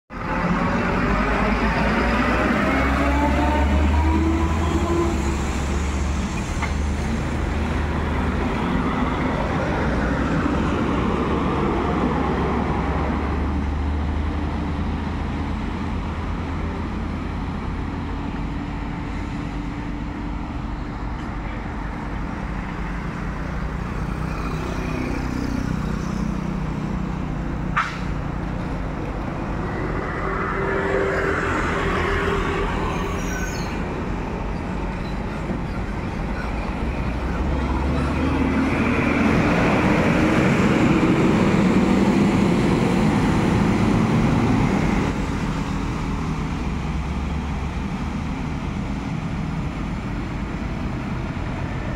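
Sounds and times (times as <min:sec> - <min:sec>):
vehicles passing: 0:00.1 - 0:51.9.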